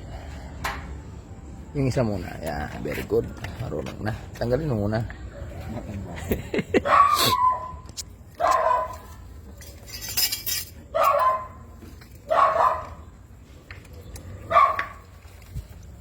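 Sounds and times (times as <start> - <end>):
dog barking: 6.8 - 9.2, 10.9 - 13.1, 14.4 - 15.1.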